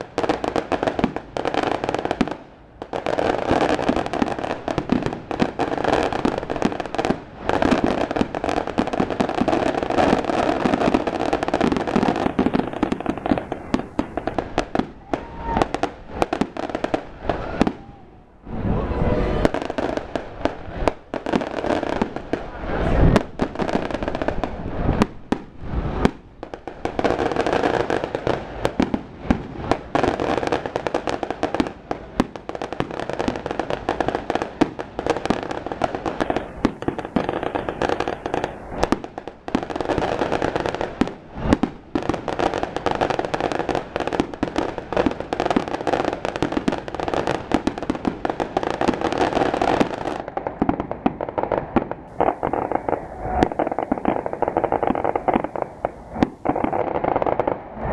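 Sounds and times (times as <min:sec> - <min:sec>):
fireworks barrage: 0:00.0 - 0:57.9
loud single firework bangs: 0:26.8 - 0:57.9.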